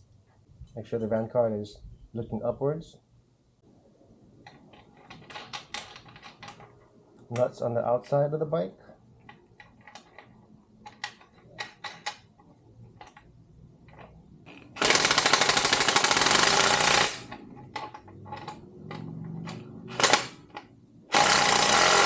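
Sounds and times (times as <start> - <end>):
tools clicking and clanking: 4.4 - 7.5, 9.2 - 22.0
impact wrench hammering: 14.8 - 17.9, 19.9 - 20.5, 21.1 - 22.0.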